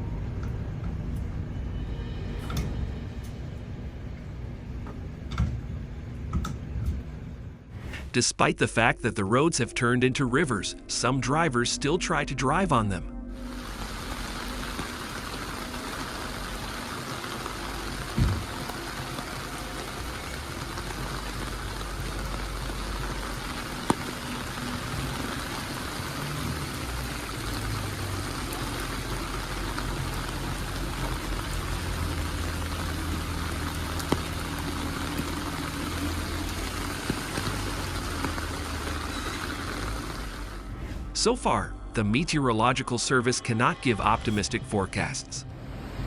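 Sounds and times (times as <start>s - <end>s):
low vehicle engine hum: 13.2s - 40.8s
running floodwater: 13.4s - 40.6s
heavy rain: 13.4s - 40.7s.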